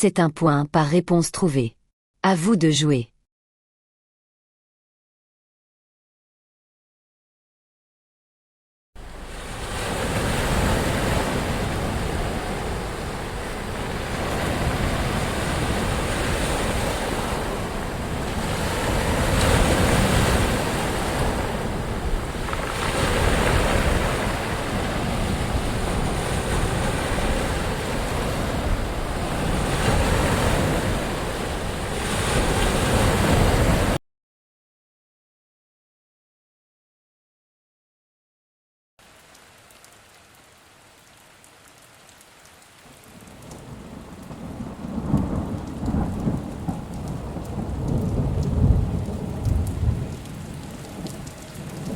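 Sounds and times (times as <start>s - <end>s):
ocean waves breaking: 9.0s - 34.0s.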